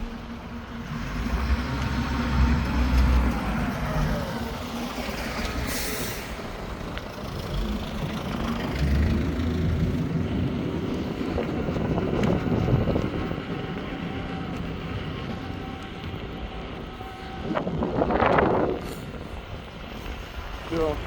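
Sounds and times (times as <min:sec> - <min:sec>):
road and wind noise: 0:00.0 - 0:21.0.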